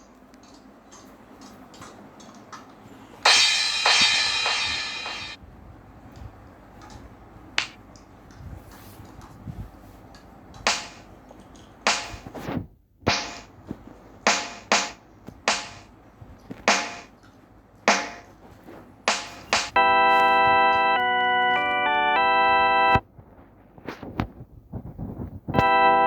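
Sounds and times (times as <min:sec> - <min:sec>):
sharp cracks or hits: 0:03.3 - 0:05.4, 0:10.7 - 0:11.1, 0:11.9 - 0:12.5, 0:13.1 - 0:13.6, 0:14.3 - 0:15.9, 0:16.6 - 0:17.1, 0:17.9 - 0:18.4, 0:19.1 - 0:19.8.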